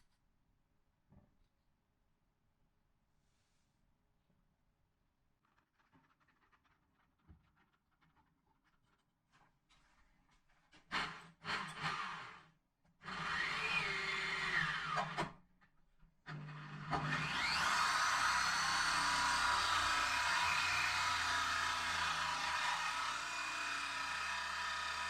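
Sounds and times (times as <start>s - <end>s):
power drill running: 13.0s - 15.3s, 16.3s - 25.0s.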